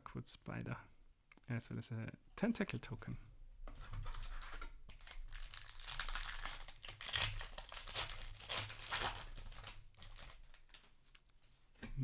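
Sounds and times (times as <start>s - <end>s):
foil wrapper crinkling and tearing: 3.8s - 11.1s.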